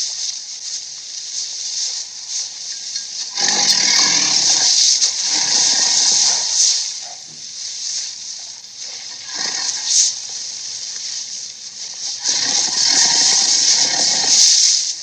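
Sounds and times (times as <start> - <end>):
breathy creature hiss: 1.6 - 15.0.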